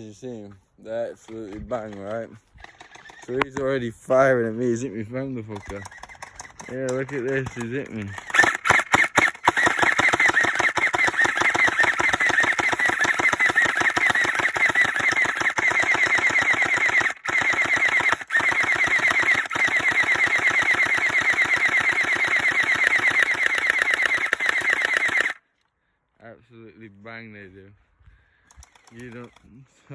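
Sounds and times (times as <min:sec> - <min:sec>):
gel blaster firing full auto: 0:05.5 - 0:25.4, 0:28.6 - 0:29.4.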